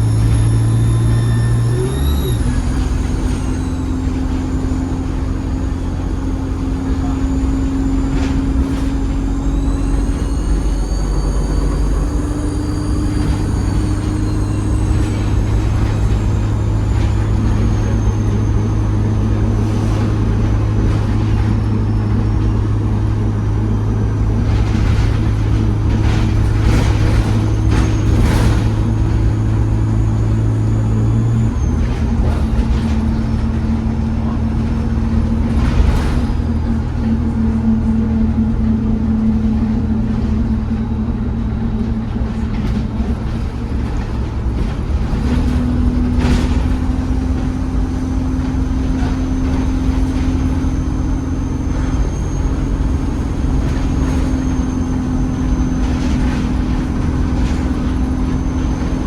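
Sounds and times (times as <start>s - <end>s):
turbocharger whistle: 0.0s - 6.1s, 6.9s - 19.1s
bus engine: 0.0s - 59.0s.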